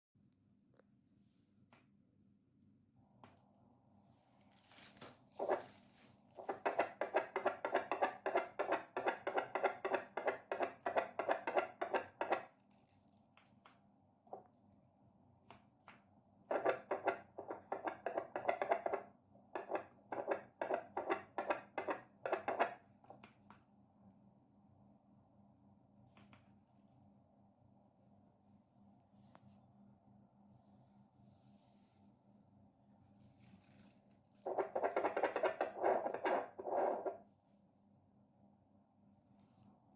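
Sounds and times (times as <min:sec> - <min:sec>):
clicks and scrapes: 0:04.7 - 0:13.0, 0:16.5 - 0:23.4, 0:33.4 - 0:37.2.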